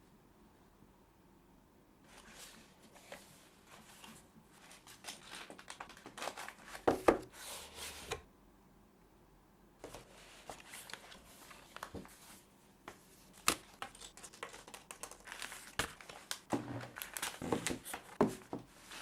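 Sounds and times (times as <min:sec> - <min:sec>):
packaging rustling and scraping: 0:09.8 - 0:12.4, 0:13.4 - 0:19.0.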